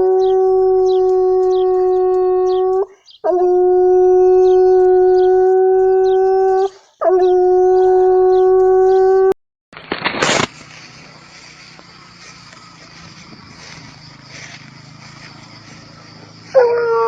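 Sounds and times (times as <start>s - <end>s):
dog howling: 0.0s - 9.3s, 16.5s - 17.0s.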